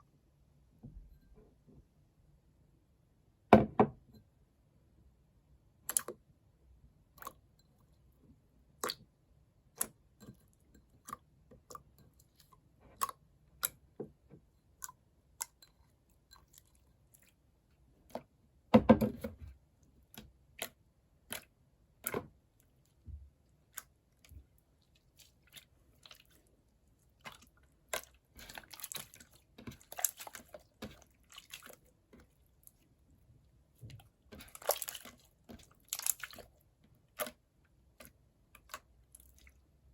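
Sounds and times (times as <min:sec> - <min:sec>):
slime squelching by hand: 0:19.5 - 0:39.9.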